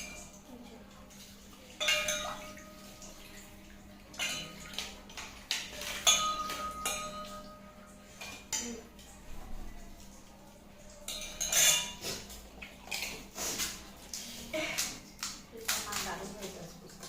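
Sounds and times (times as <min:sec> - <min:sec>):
metal dishes and spoon clinking: 0:00.0 - 0:00.6, 0:01.6 - 0:03.5, 0:04.1 - 0:09.4, 0:11.0 - 0:13.8.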